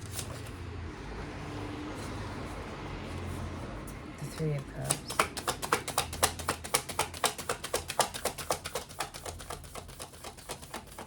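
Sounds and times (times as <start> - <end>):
cards being shuffled: 0.0 - 0.6, 4.6 - 11.0.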